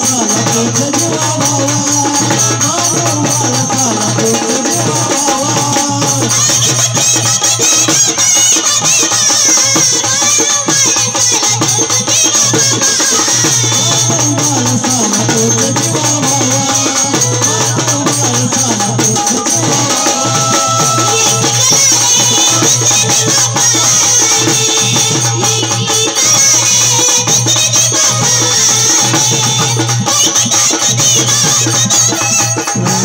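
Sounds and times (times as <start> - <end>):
jingling rattling percussion: 0.0 - 33.0
steady drum beat: 0.0 - 33.0.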